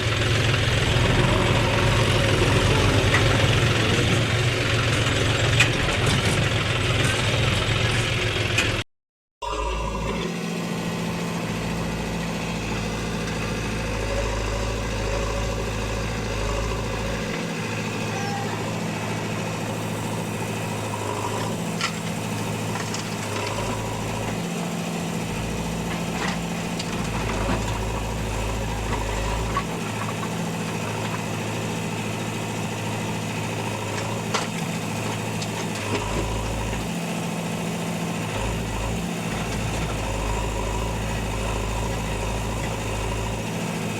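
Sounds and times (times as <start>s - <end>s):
diesel engine idling: 0.0s - 8.8s, 9.4s - 43.9s.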